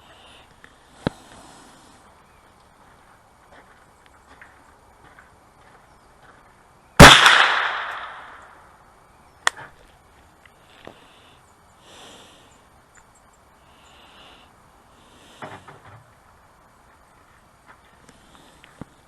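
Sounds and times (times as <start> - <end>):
gunshot with rolling echo: 7.0 - 8.6
sharp crack: 7.0 - 8.7.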